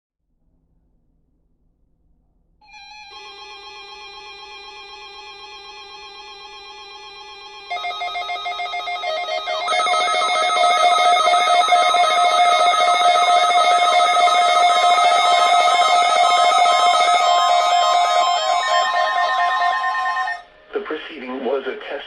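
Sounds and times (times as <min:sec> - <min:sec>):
electronic ringing alert tones: 0:02.7 - 0:20.4
rapidly repeating warble: 0:04.7 - 0:20.4
layered drone: 0:06.5 - 0:20.9.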